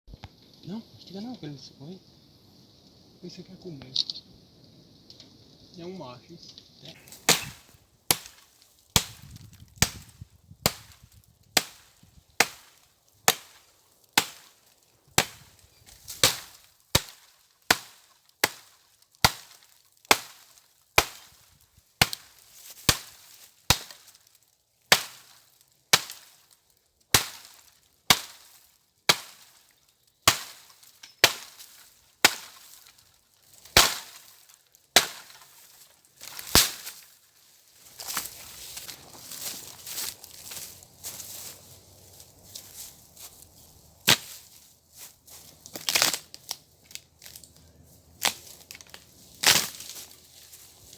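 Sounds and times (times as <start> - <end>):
axe chopping wood: 7.1 - 13.6, 14.2 - 14.5, 15.2 - 15.5, 16.1 - 21.4, 22.0 - 24.1, 24.9 - 26.3, 27.2 - 28.5, 29.1 - 29.6, 30.2 - 33.0, 33.7 - 34.4, 35.0 - 35.6, 36.2 - 37.0, 44.0 - 44.4, 48.2 - 50.0.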